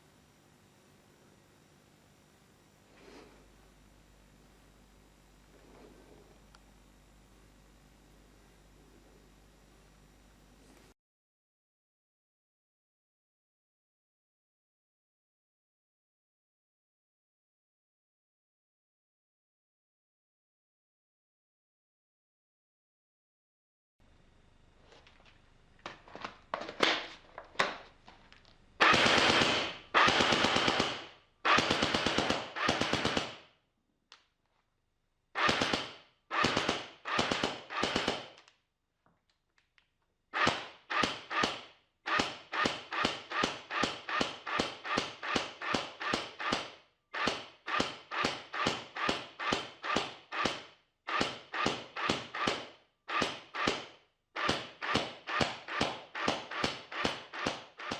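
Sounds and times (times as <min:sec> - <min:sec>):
airsoft gun firing bursts: 0:28.8 - 0:33.6, 0:35.4 - 0:38.4, 0:40.4 - 0:57.9.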